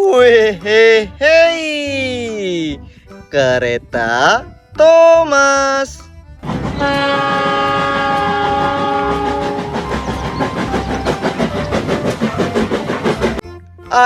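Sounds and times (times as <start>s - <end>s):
train wheels clickety-clack: 6.4s - 13.4s
train horn blast: 6.7s - 11.5s.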